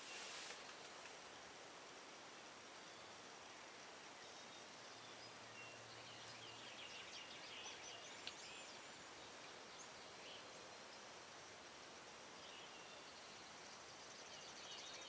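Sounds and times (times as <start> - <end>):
background hiss: 0.0 - 15.0
songbird chirps and trills: 2.7 - 15.0.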